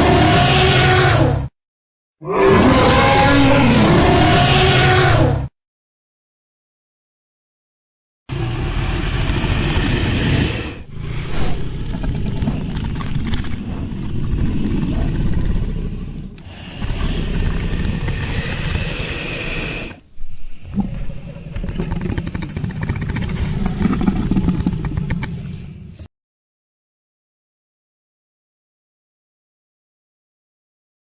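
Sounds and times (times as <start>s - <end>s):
heavy rumbling rushing noise: 10.8s - 16.6s.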